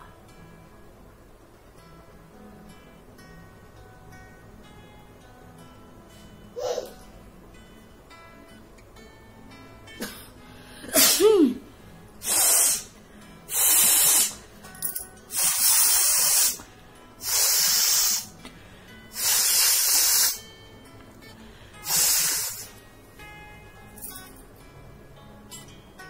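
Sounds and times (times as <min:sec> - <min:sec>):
person blowing out through nose: 0:10.8 - 0:11.5, 0:12.2 - 0:14.4, 0:15.3 - 0:16.6, 0:17.2 - 0:18.3, 0:19.1 - 0:20.4, 0:21.8 - 0:22.8.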